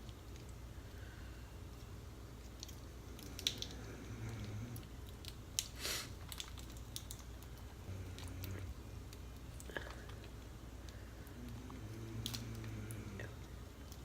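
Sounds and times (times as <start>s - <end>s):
wet squishing: 2.4s - 14.0s
crab shell cracking clicks: 2.5s - 7.3s.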